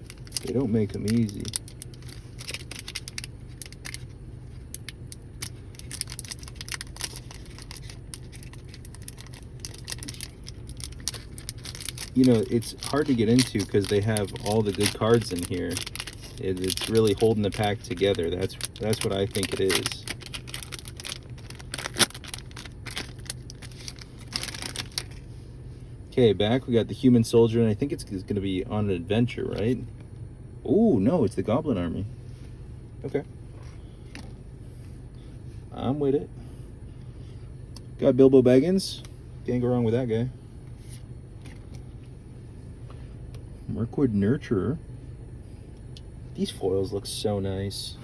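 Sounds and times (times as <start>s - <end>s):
foil wrapper crinkling: 0.0s - 25.3s.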